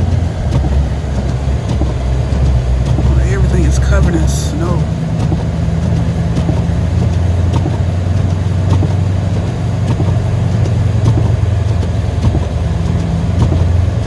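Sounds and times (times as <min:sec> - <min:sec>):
car engine running: 0:00.0 - 0:14.0
faint ticks: 0:04.9 - 0:14.0.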